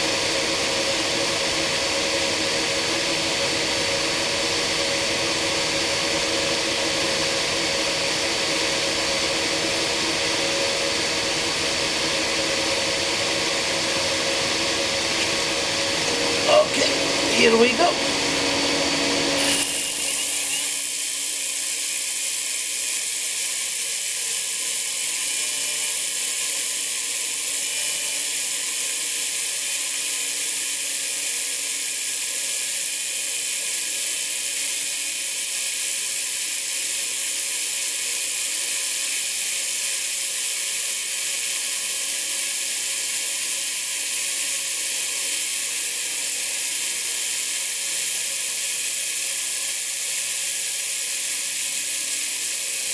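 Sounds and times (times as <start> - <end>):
belt sander running: 0.0 - 52.9.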